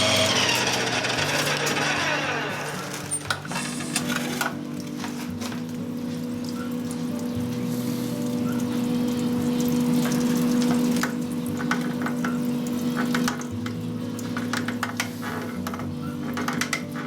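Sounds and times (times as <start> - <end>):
lathe motor hum: 0.0 - 4.4
crackling sizzling metal cutting: 0.0 - 6.3.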